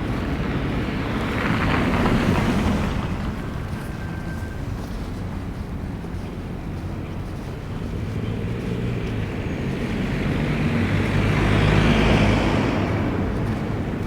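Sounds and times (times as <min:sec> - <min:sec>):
vehicle passing: 0:07.8 - 0:14.0.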